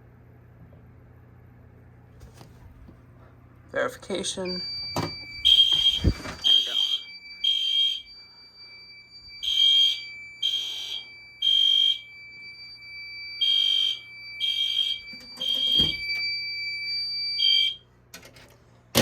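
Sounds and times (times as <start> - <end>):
faint steady whine: 1.1 - 18.0
fire alarm beeps: 4.4 - 17.9.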